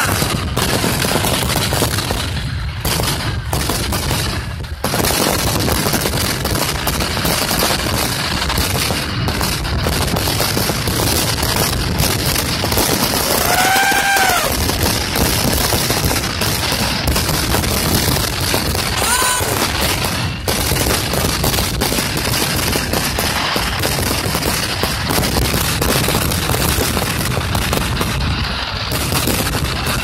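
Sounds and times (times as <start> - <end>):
fireworks bangs and crackling: 0.0 - 30.0
firework whistle: 10.3 - 30.0.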